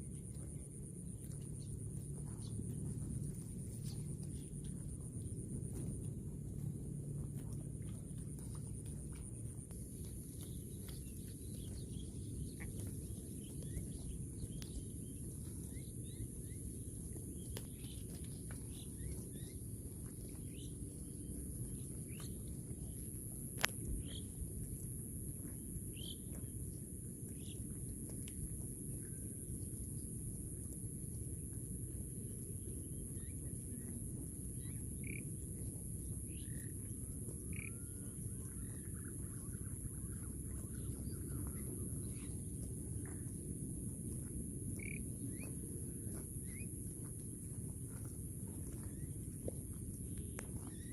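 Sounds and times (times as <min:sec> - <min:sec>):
low rumble: 0:00.0 - 0:50.9
small birds chirping: 0:44.8 - 0:45.5.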